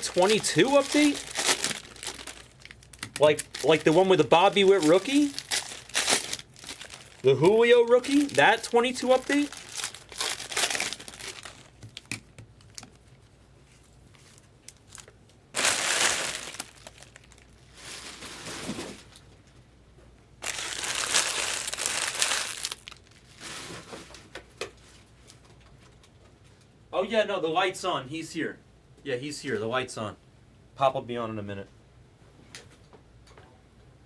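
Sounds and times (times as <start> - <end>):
card pack wrappers crinkling: 0.0 - 13.2, 14.2 - 19.2, 20.4 - 23.6.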